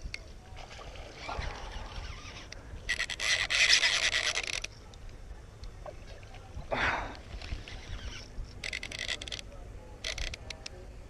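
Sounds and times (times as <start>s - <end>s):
fishing reel clicking: 1.2s - 4.7s, 7.3s - 10.8s.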